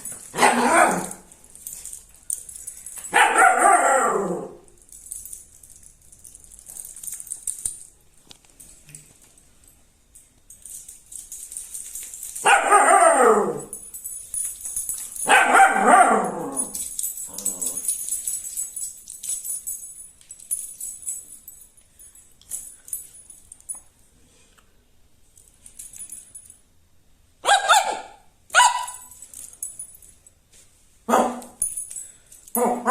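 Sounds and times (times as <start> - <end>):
dog barking: 0.4 - 1.2, 3.1 - 4.5, 12.4 - 13.6, 15.2 - 16.4, 27.4 - 29.0, 31.1 - 31.6, 32.6 - 32.9
dog crying: 3.2 - 4.6, 12.4 - 13.7.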